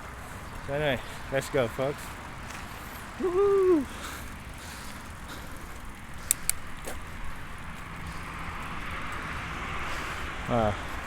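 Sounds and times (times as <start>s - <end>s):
bicycle tyres on road: 0.0s - 11.0s
sharp clicks: 6.2s - 6.8s.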